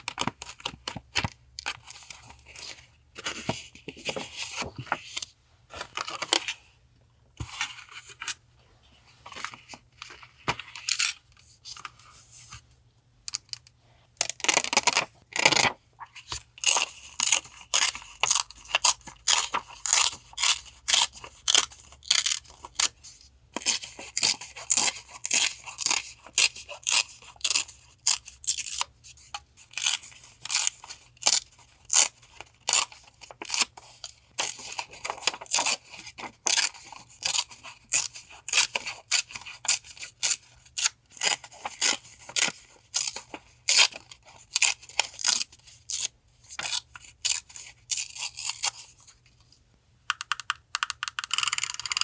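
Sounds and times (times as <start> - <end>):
scissors cutting paper: 16.6 - 23.0, 29.6 - 48.9.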